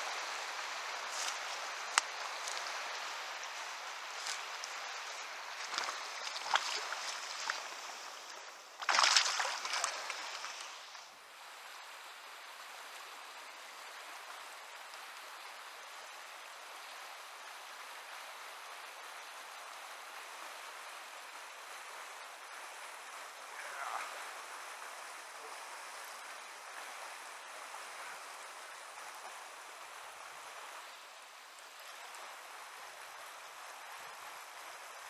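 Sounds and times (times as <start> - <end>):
water splashing in river: 0.0 - 11.1
river current rushing: 0.0 - 35.0.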